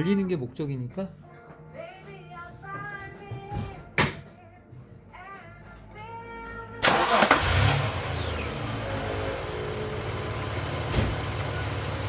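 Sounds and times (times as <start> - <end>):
engine starting and idling: 6.8 - 12.0.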